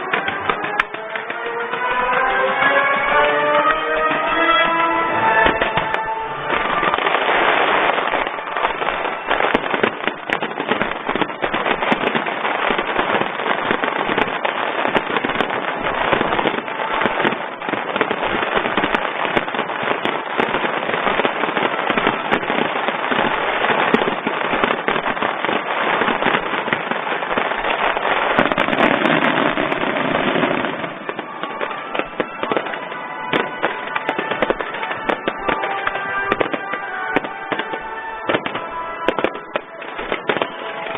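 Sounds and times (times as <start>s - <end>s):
music playing: 0.0s - 10.4s, 28.6s - 40.9s
fireworks bursting and crackling: 0.0s - 40.9s.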